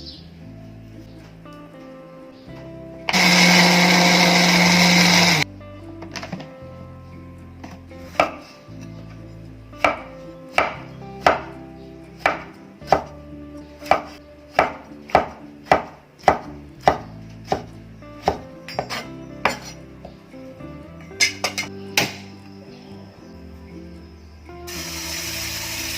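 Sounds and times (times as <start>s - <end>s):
knife chopping on cutting board: 13.8s - 19.7s.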